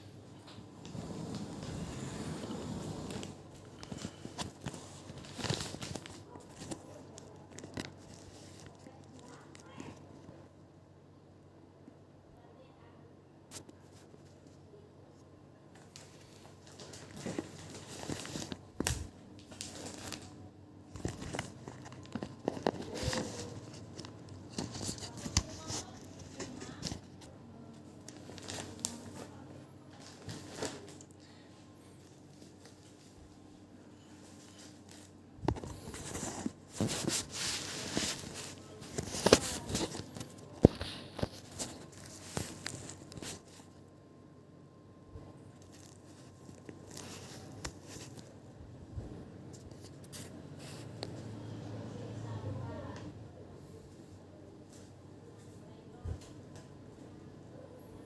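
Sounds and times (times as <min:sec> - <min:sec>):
crinkling and rustling: 0:00.4 - 0:10.6, 0:15.2 - 0:31.2, 0:32.0 - 0:44.0, 0:45.2 - 0:51.4.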